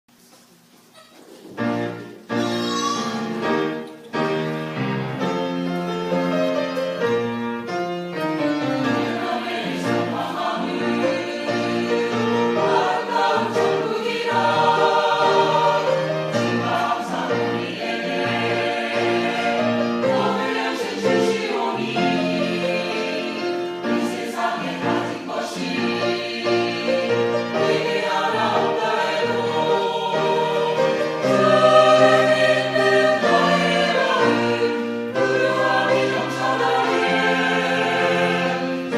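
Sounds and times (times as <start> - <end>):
church choir singing: 1.8 - 38.9.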